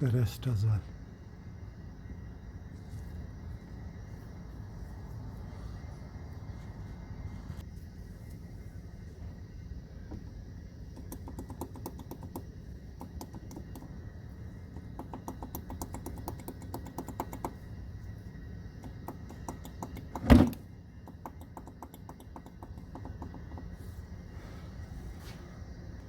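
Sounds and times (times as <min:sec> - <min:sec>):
rapid light tool clicks: 0:11.0 - 0:13.9, 0:15.0 - 0:17.6, 0:21.0 - 0:23.7.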